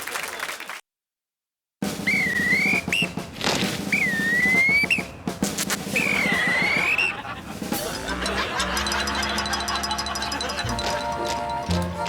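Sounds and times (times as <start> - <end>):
drum-driven music: 1.8 - 12.0
clattering percussion: 3.2 - 6.7, 7.5 - 12.0.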